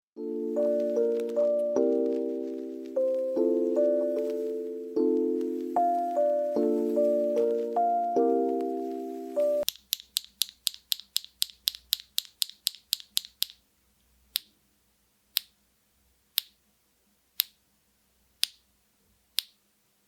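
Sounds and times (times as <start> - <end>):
keyboard switch clicks: 9.6 - 13.6.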